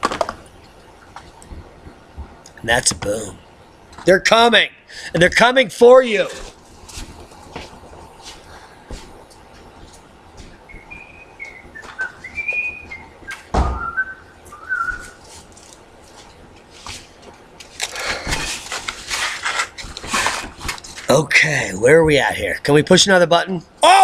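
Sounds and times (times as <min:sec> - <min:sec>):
person whistling: 0:10.7 - 0:15.2
thump: 0:13.5 - 0:14.0
rustling and clicking: 0:14.5 - 0:21.1.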